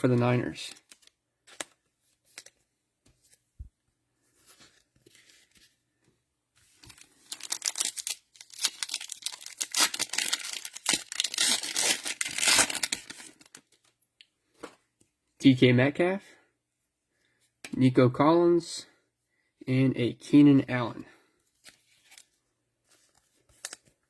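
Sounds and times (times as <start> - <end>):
cellophane wrapper tearing: 6.8 - 13.6.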